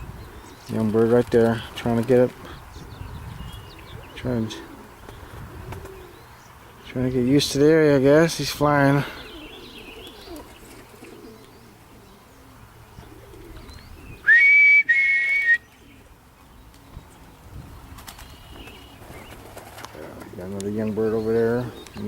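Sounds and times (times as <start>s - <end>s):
pigeons cooing: 0.0s - 22.0s
loud two-note whistle: 14.3s - 15.6s.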